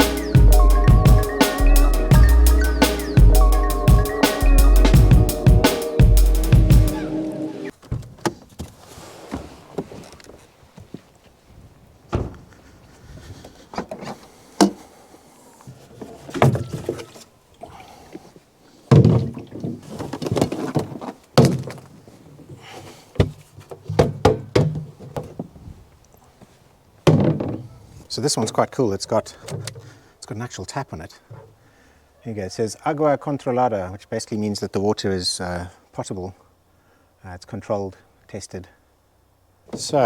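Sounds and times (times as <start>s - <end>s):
thumps and knocks: 23.2s - 25.5s.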